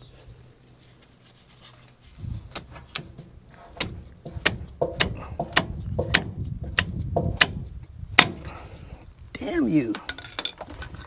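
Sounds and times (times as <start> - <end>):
tools clanking on metal: 2.8 - 7.6, 9.9 - 11.0.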